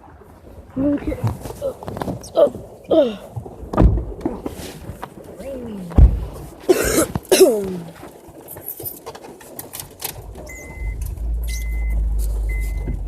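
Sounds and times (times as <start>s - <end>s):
low steady rumble: 10.1s - 13.0s
car warning chime beeping: 10.5s - 13.0s.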